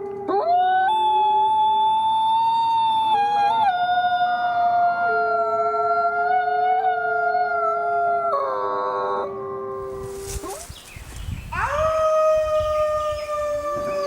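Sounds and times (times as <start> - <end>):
wolves howling in chorus: 11.5 - 14.0.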